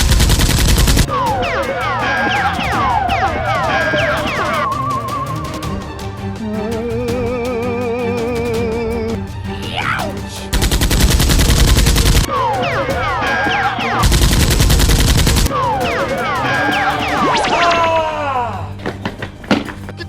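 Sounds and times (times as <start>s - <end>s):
automatic gunfire: 0.0s - 1.1s, 10.6s - 12.3s, 13.9s - 15.5s
action music: 0.0s - 20.0s.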